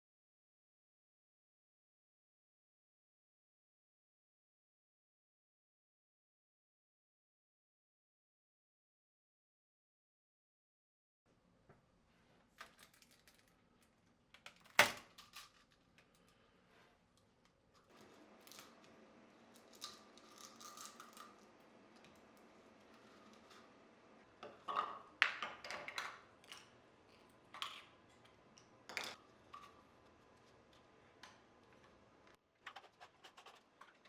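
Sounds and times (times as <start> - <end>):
faint steady hum: 15.4 - 32.7.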